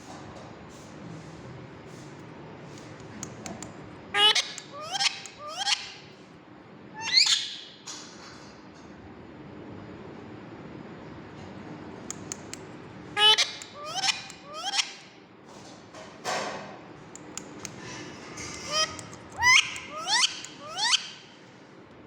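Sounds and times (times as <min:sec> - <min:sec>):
parrot giving harsh calls: 0:04.2 - 0:06.0, 0:13.2 - 0:15.0, 0:18.6 - 0:21.2.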